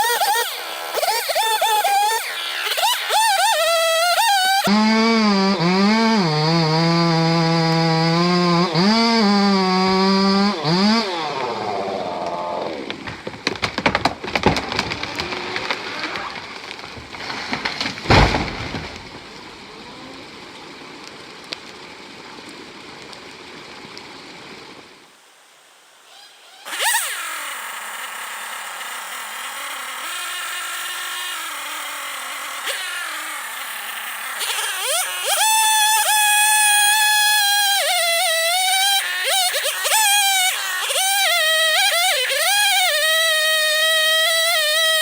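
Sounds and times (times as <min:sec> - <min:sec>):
chainsaw cutting: 0:00.0 - 0:20.5, 0:26.0 - 0:45.0
loud thud: 0:17.1 - 0:19.3.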